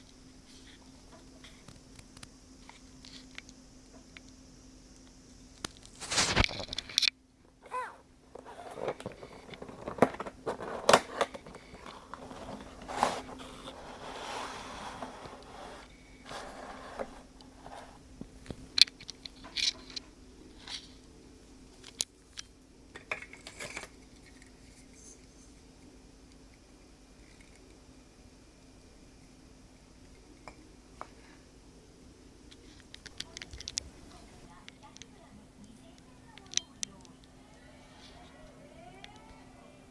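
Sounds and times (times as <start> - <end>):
plastic parts scraping: 5.8 - 7.1, 7.7 - 21.0
plastic toy parts clicking: 18.8 - 20.0.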